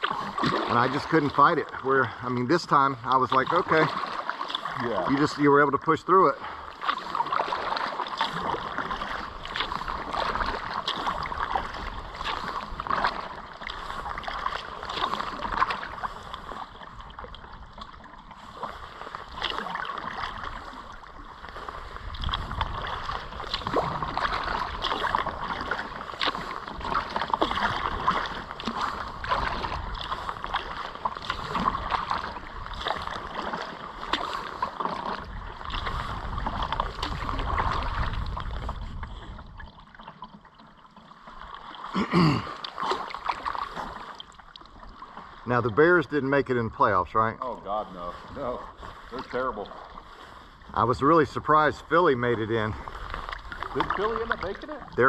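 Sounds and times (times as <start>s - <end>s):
kayak paddle splashing: 0.0s - 55.0s
river water rushing: 41.8s - 44.2s.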